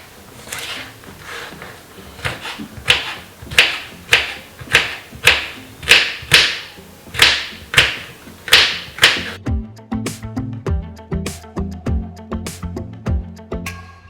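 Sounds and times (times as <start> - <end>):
background music with clap beat: 2.9 - 14.0
low bass line: 9.4 - 14.0.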